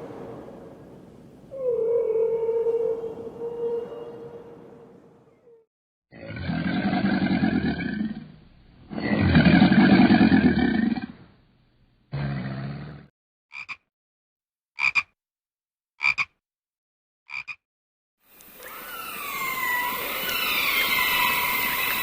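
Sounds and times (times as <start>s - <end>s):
descending whistles: 18.6s - 22.0s.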